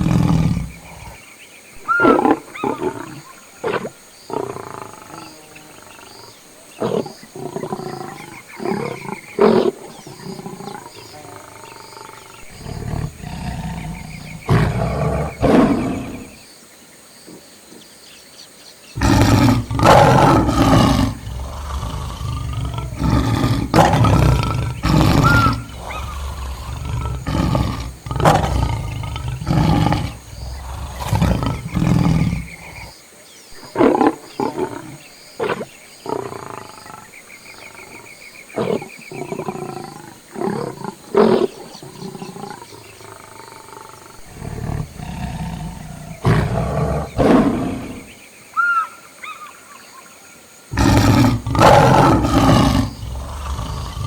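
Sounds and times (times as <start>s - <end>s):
lion roaring: 0.0s - 1.2s, 6.8s - 16.4s, 19.0s - 32.9s, 38.6s - 48.2s, 50.7s - 54.0s
lion grunting: 0.0s - 16.4s, 19.0s - 33.0s, 33.6s - 48.2s, 50.7s - 54.0s.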